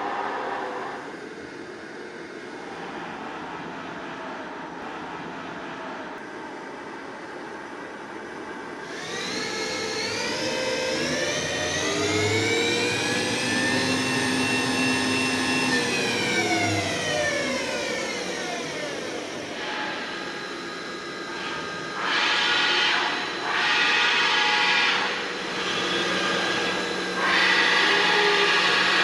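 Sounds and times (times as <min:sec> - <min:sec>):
milling machine whining: 0:08.9 - 0:29.0.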